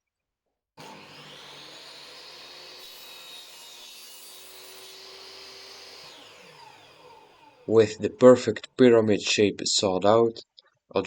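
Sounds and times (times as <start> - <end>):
table saw cutting wood: 0.8 - 8.4.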